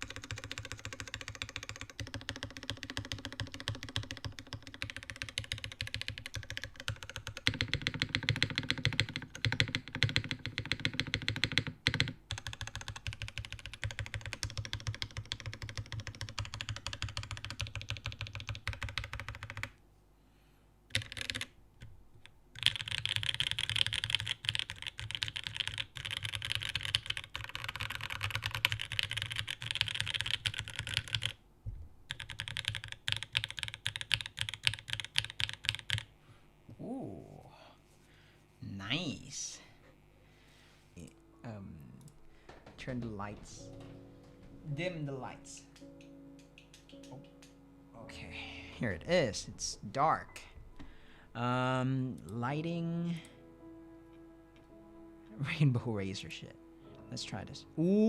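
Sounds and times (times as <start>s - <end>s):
mechanical keyboard typing: 0.0s - 19.8s, 20.9s - 21.6s, 22.6s - 31.4s, 32.1s - 36.1s, 45.6s - 47.5s.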